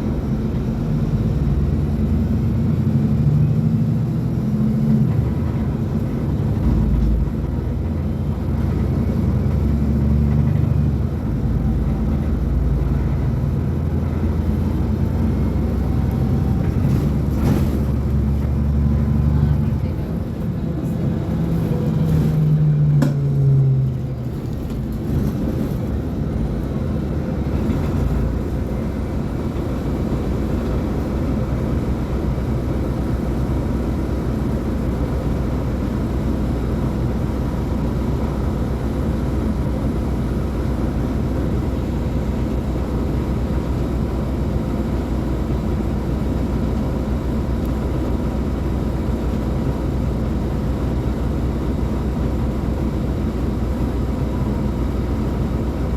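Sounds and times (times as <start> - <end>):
bus diesel engine drone: 0.0 - 55.9.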